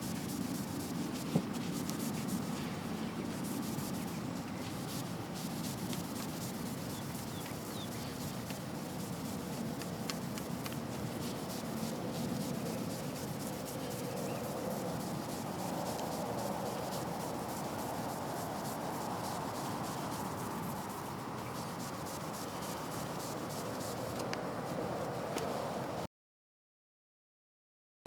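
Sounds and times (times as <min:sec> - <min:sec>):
hand sanding car paint: 0:00.0 - 0:25.9.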